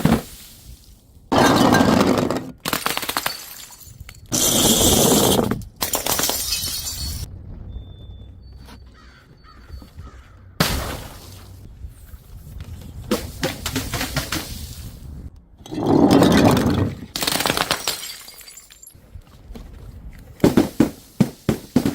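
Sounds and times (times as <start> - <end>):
glass bottles shattering: 1.3 - 7.3, 15.8 - 19.0.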